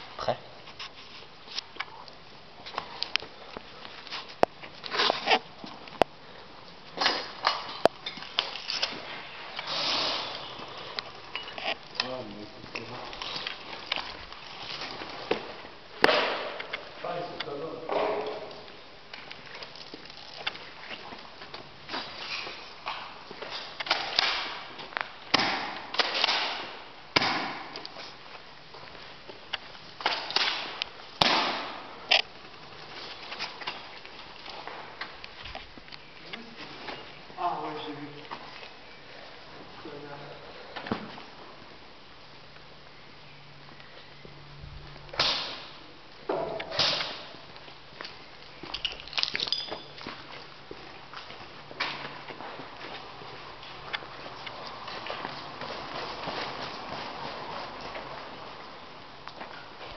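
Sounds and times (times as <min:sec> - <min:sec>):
rustling and shuffling movement: 0:00.0 - 0:16.0, 0:47.2 - 0:59.9
players moving and scuffing: 0:00.0 - 0:26.0, 0:26.6 - 0:41.8, 0:46.4 - 0:59.9
airsoft gun shots: 0:16.0 - 0:16.6, 0:25.3 - 0:27.8, 0:30.1 - 0:31.9, 0:45.2 - 0:45.8, 0:46.6 - 0:47.3.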